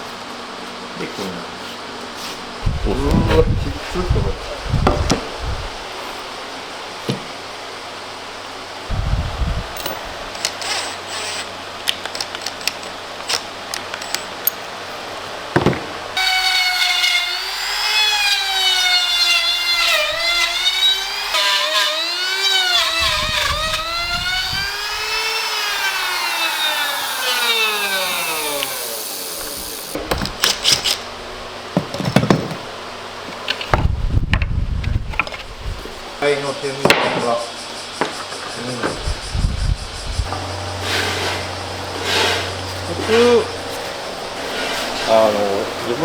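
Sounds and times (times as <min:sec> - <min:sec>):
power tool cutting wood: 0:16.2 - 0:30.0, 0:40.3 - 0:46.0.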